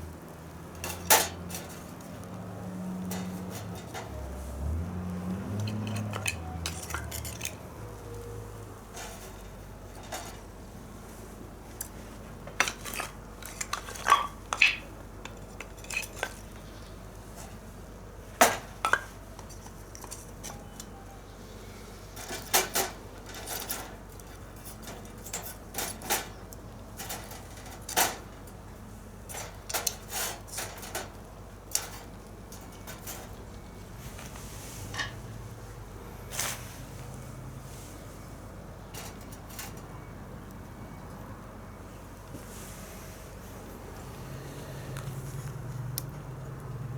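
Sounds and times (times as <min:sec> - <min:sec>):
metal utensils clinking on pan: 0:00.8 - 0:02.3, 0:03.0 - 0:04.3, 0:05.5 - 0:07.8, 0:08.9 - 0:10.4, 0:12.5 - 0:16.8.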